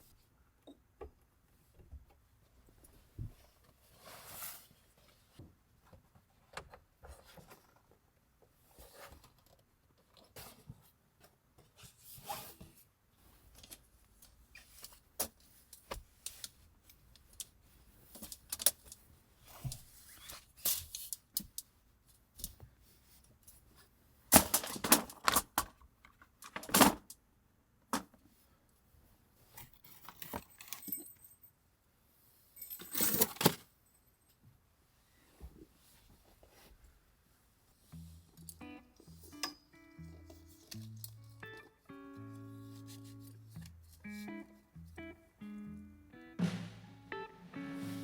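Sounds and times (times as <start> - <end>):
small objects rustling and tapping: 13.5 - 23.6, 24.3 - 27.2
objects jangling: 29.8 - 31.5, 32.6 - 33.6.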